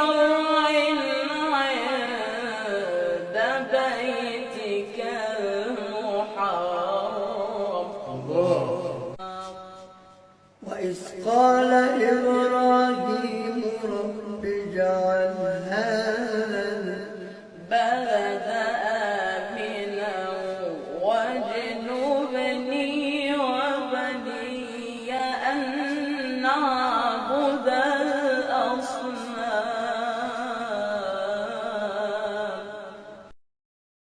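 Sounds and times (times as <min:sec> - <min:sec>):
person reciting melodically: 0:00.0 - 0:09.9, 0:10.6 - 0:32.9
breaths: 0:17.2 - 0:17.6.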